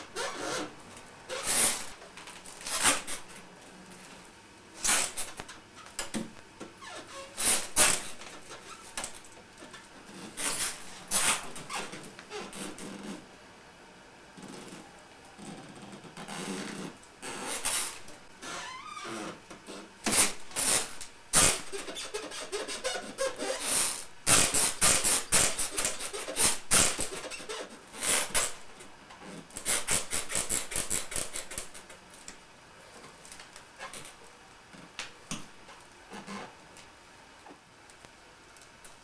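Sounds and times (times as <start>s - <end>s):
toy stroller squeaking and creaking: 0.2s - 0.7s, 1.3s - 3.2s, 20.1s - 28.5s.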